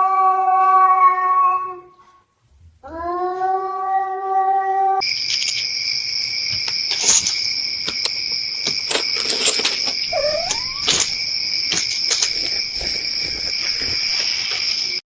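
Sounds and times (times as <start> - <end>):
crickets chirping: 5.0 - 15.0.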